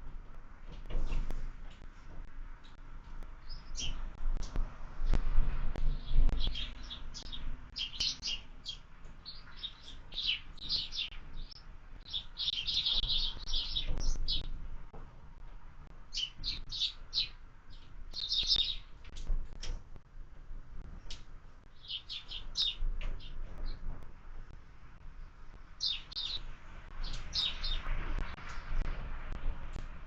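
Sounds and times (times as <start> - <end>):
small songbirds chirping: 2.6 - 14.6, 15.8 - 19.7, 20.8 - 29.9.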